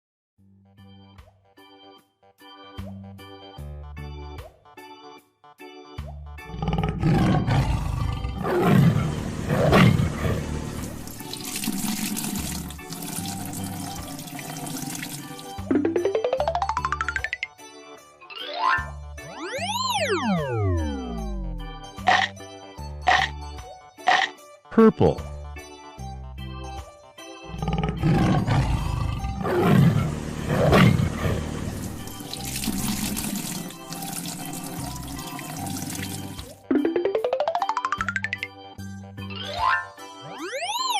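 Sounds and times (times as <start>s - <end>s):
music: 0.4s - 40.9s
tiger roaring: 6.5s - 10.9s, 27.5s - 32.1s
cartoon roar: 27.5s - 31.5s.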